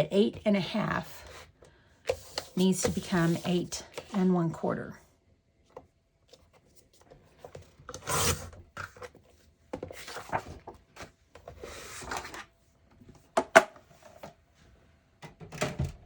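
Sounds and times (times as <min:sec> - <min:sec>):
cardstock rustling and rubbing: 0:02.1 - 0:04.2, 0:09.9 - 0:12.4.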